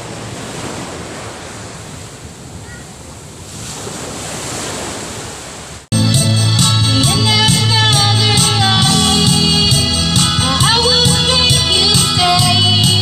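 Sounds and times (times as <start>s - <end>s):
sea waves washing onto beach: 0.0s - 5.9s
music: 5.9s - 13.0s.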